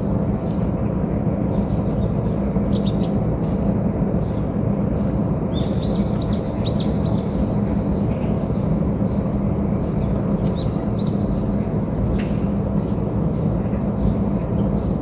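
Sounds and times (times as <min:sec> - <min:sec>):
small bird chirping: 0:05.5 - 0:07.4.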